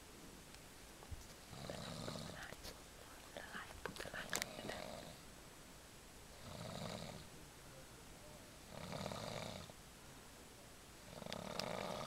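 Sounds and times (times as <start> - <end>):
person snoring: 1.5 - 2.4, 4.6 - 5.2, 6.4 - 7.2, 8.7 - 9.7, 11.1 - 12.0.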